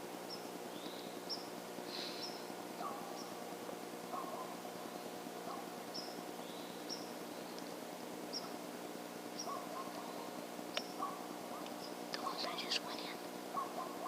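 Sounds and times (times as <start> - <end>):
low background hum: 0.0 - 14.0
bird chirping: 0.3 - 3.4, 5.9 - 7.6, 8.3 - 8.6, 9.3 - 13.2.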